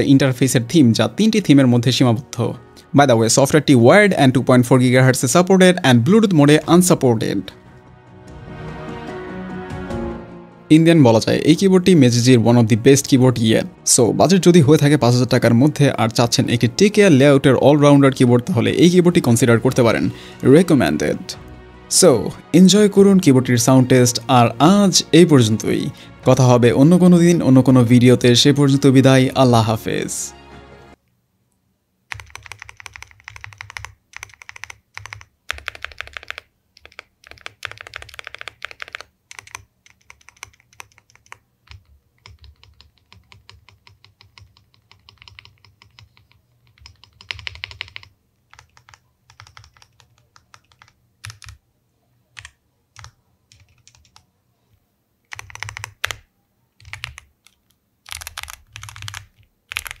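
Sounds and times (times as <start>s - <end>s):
mechanical keyboard typing: 32.1s - 51.6s, 52.4s - 54.3s, 55.3s - 56.2s, 56.8s - 60.0s.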